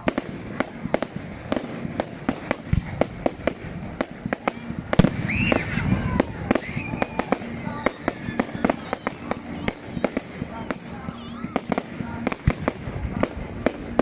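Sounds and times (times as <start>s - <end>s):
firework whistling: 0.0s - 14.0s
fireworks cracking and popping: 0.0s - 14.0s
loud firework bang: 0.0s - 14.0s.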